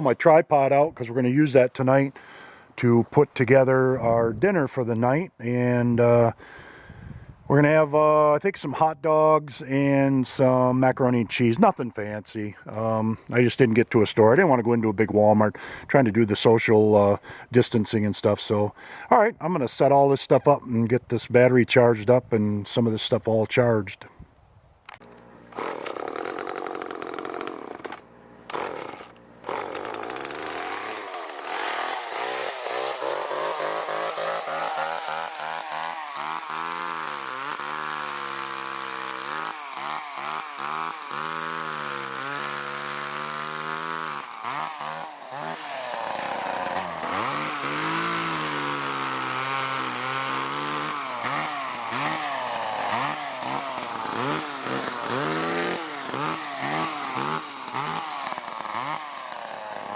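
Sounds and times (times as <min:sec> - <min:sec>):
chainsaw revving and cutting: 0:25.0 - 0:59.9.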